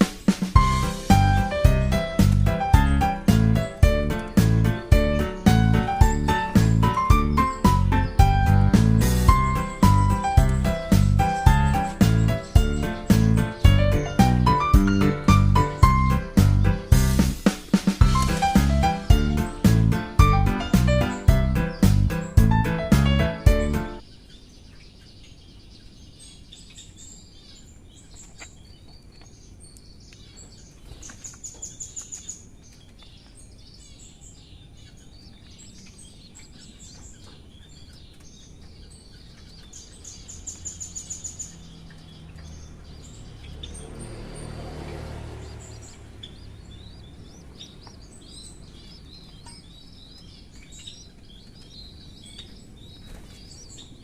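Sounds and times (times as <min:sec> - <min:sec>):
birds chirping and twittering: 0:00.0 - 0:54.0.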